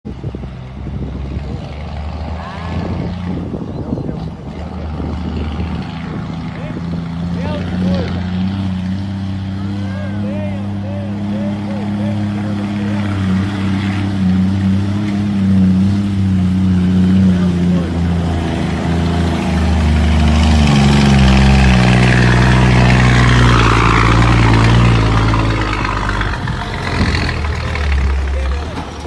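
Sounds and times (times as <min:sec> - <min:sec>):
truck diesel engine rumbling: 0:00.0 - 0:29.0.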